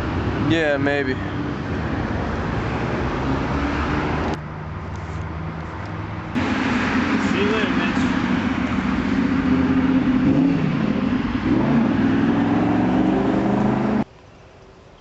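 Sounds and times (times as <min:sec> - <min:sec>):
car engine accelerating: 0:06.4 - 0:14.0.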